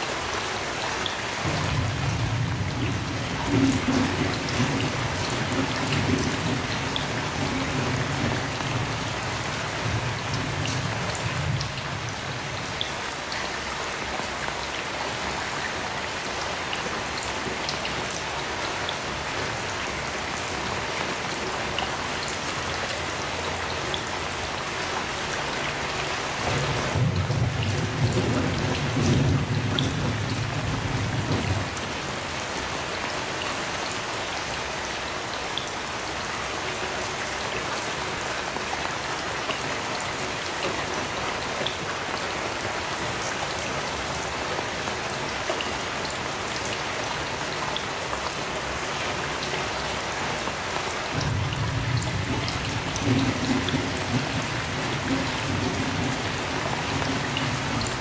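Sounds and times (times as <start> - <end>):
heavy rain: 0.0 - 58.0
thunder rumble: 1.4 - 12.5, 26.4 - 32.2, 51.2 - 58.0.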